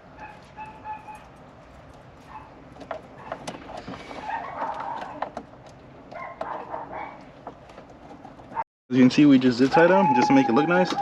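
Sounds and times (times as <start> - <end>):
high-pitched animal calls: 9.7 - 11.0.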